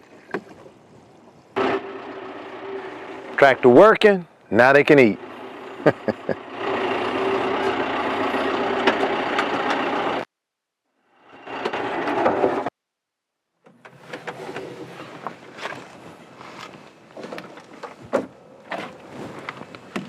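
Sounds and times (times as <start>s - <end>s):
tractor engine running: 1.6s - 4.2s, 4.8s - 10.3s.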